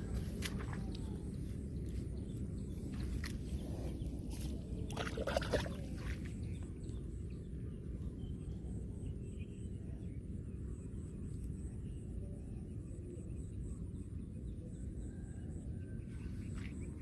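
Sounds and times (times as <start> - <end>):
low rumble: 0.0 - 17.0
shallow water splashing: 4.8 - 6.6.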